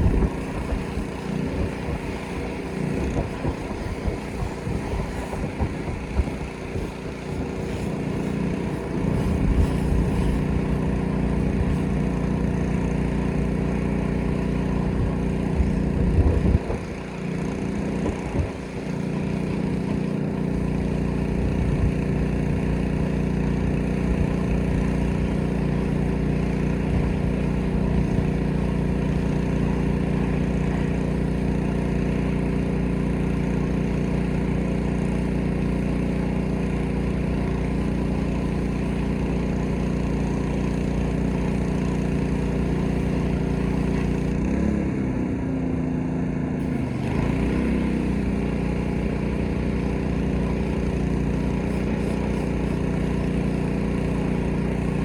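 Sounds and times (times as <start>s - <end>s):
hissing water spray: 0.0s - 44.4s, 46.6s - 55.0s
pressure washer engine running: 0.0s - 55.0s.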